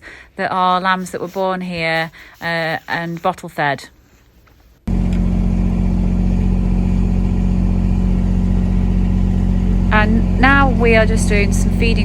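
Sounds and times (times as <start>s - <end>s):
farm vehicle engine running: 4.9s - 12.0s.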